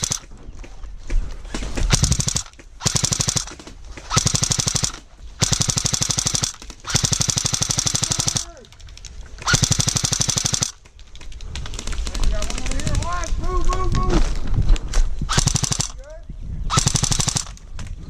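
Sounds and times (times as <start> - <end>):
airsoft gun firing bursts: 0.0 - 0.3, 1.8 - 13.1, 15.3 - 16.0, 16.7 - 17.7.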